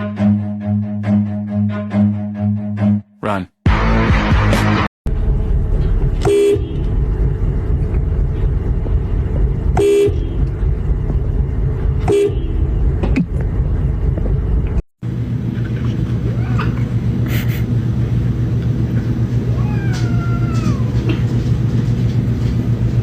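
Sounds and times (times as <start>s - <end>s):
vehicle engine rumble: 5.1s - 23.0s
car horn tooting: 6.2s - 6.9s, 9.8s - 10.5s, 12.0s - 12.7s.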